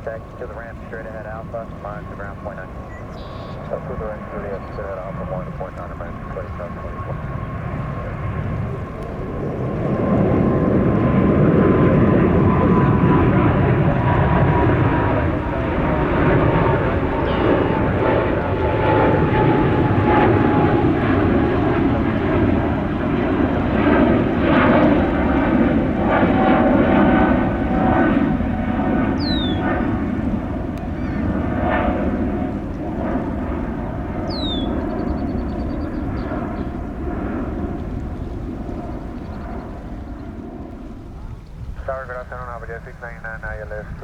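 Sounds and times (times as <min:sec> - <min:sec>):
jet engines rushing and whining: 0:00.0 - 0:44.0.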